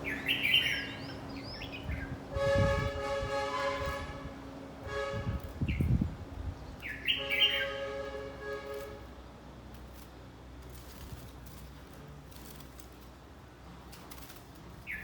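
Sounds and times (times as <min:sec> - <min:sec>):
horn-like tone: 0:02.3 - 0:05.5, 0:07.2 - 0:09.0.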